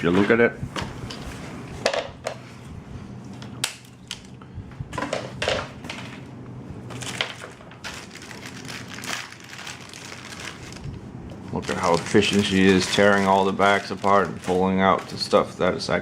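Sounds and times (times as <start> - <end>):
plastic bags crinkling: 6.9 - 16.0.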